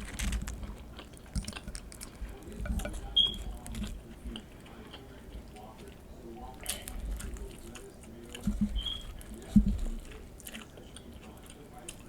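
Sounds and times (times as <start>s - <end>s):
chewing nachos: 0.0s - 12.0s.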